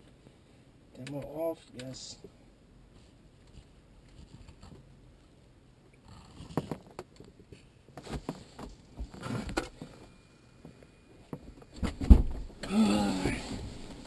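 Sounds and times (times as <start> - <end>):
heavy thump: 11.8 - 12.6.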